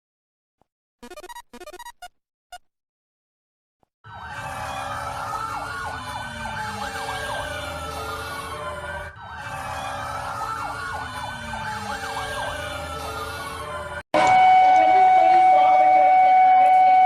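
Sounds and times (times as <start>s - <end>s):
sirens wailing: 4.0s - 17.0s.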